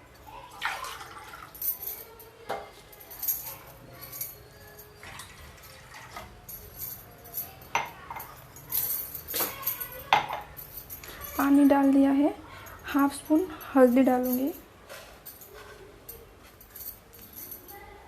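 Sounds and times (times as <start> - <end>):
water pouring into pot: 0.5 - 1.6.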